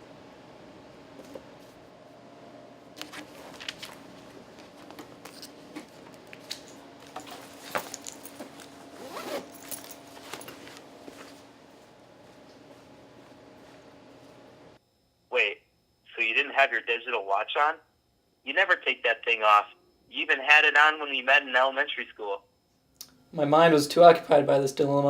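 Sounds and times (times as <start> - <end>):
rustling handling noises: 3.0 - 14.3.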